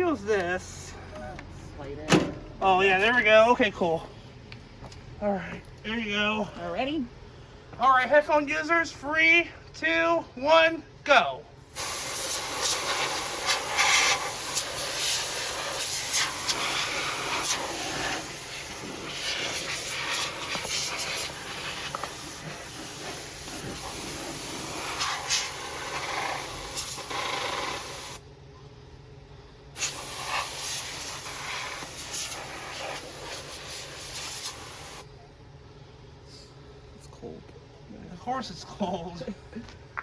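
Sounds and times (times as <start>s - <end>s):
compressed air spraying hiss: 11.7s - 28.2s, 29.8s - 35.0s.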